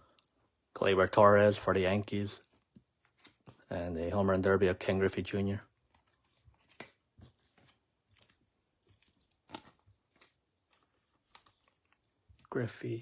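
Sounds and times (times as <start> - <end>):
trading cards and packaging handled: 2.4 - 3.7, 5.7 - 12.7.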